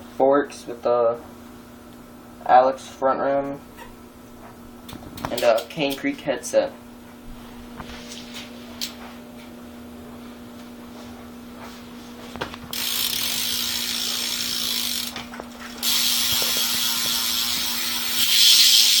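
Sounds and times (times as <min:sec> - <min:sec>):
bike freewheel ratcheting: 0:12.7 - 0:19.0.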